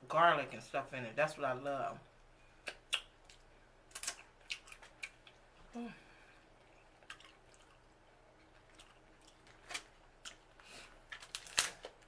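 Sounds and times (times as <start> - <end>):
wet eating squishes: 2.6 - 5.7, 6.3 - 12.0.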